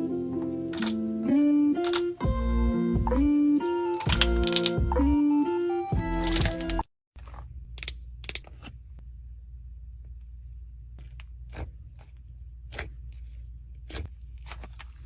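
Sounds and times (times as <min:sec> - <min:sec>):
sharp clicks and crackles: 0:07.8 - 0:08.5.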